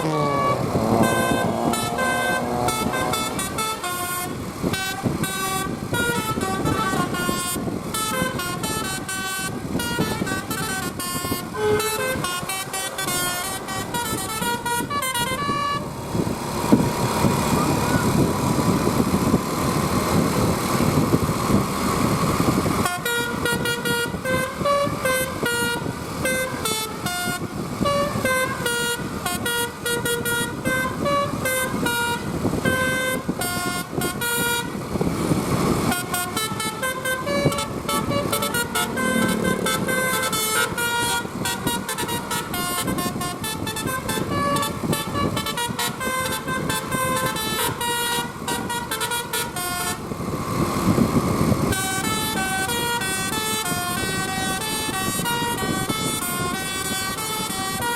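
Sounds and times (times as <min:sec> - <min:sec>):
musical bus horn tune: 0:00.0 - 0:16.0, 0:22.8 - 0:35.0, 0:35.9 - 0:50.1, 0:51.7 - 0:57.9
bus engine and road noise: 0:00.0 - 0:57.9.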